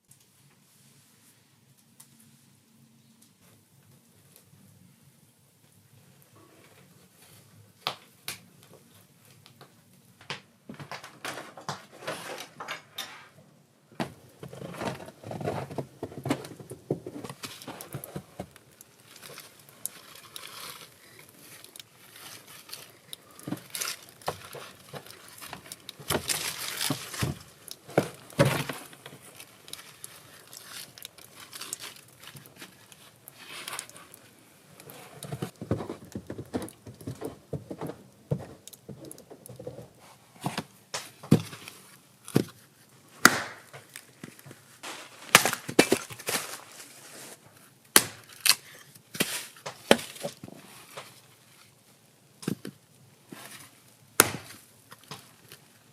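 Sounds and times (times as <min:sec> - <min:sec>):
rustling: 0:14.0 - 0:55.9.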